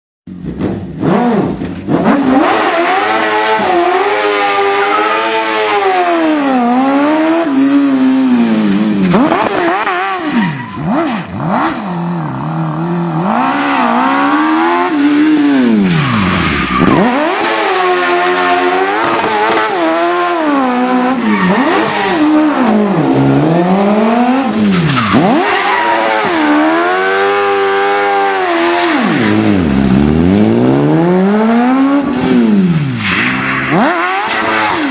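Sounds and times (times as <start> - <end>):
car engine revving: 0.3 - 34.9.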